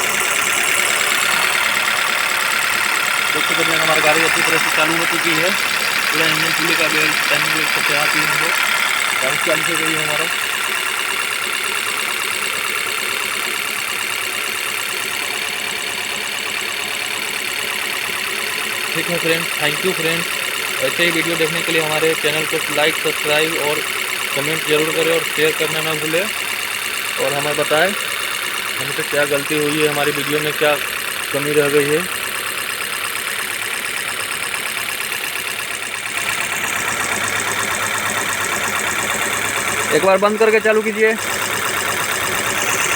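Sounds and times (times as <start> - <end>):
car engine idling: 0.0 - 42.9.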